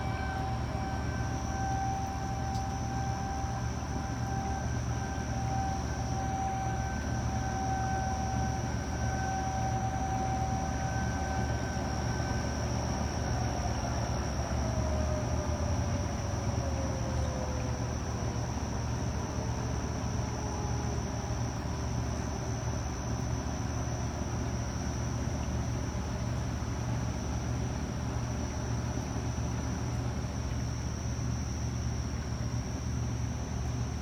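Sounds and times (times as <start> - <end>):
tornado warning siren wailing: 0.0 - 34.0.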